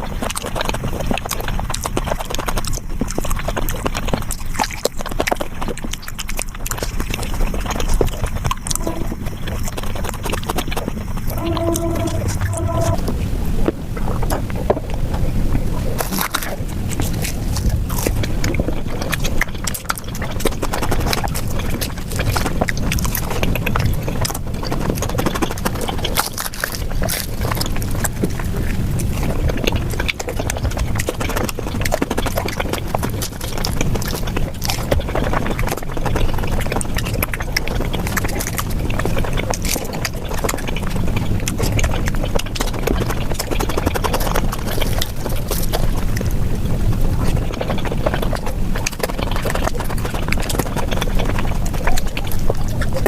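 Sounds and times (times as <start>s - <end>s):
sped-up chewing and smacking: 0.0s - 12.9s, 14.2s - 53.0s
low rumble: 8.4s - 10.2s, 11.0s - 14.0s.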